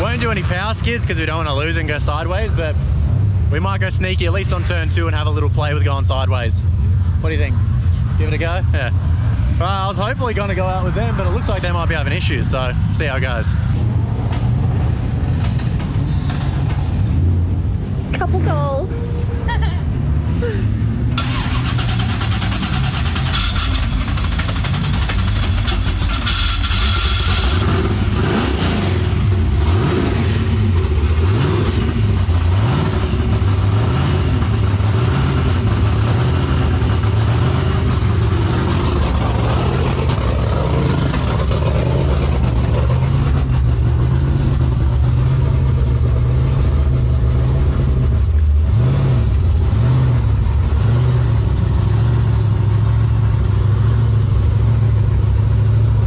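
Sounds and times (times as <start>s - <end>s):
car engine revving: 16.6s - 56.0s.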